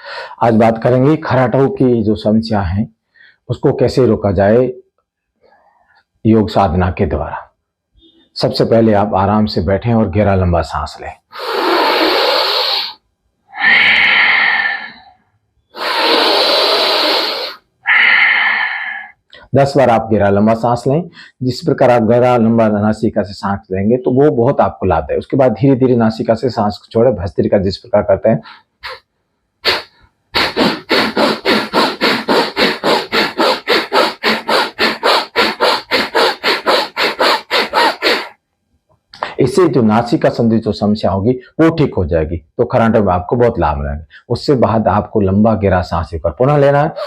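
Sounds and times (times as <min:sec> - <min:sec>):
deep breaths through nose: 0:11.3 - 0:19.2, 0:28.4 - 0:29.0, 0:29.6 - 0:38.4.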